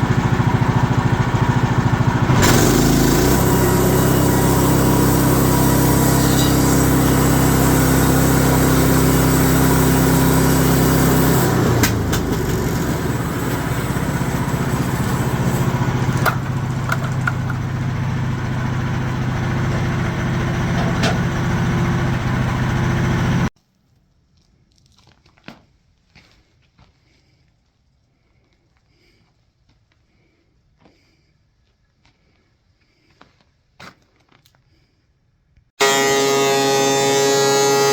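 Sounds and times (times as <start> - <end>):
sawmill gasoline engine running: 0.0 - 23.5, 35.8 - 37.9.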